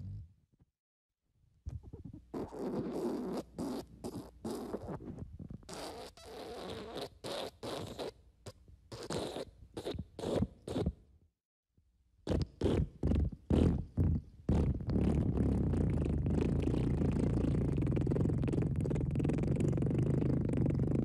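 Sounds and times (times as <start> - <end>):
fart sound effect: 12.3 - 21.0.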